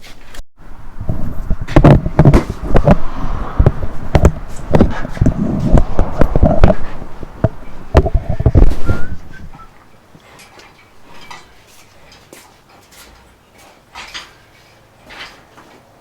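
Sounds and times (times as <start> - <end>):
metal clanks and knocks: 10.4 - 15.8.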